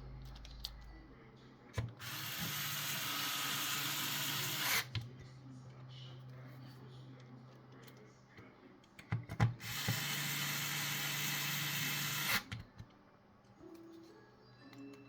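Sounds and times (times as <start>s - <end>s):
electric screwdriver running: 2.0s - 4.9s, 9.6s - 12.5s.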